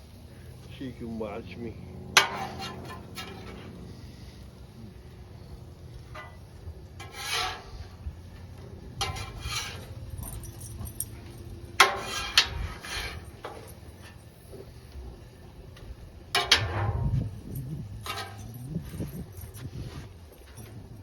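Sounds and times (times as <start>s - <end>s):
low steady rumble: 0.0s - 21.0s
utensils scraping a grill: 0.1s - 15.6s, 16.3s - 21.0s.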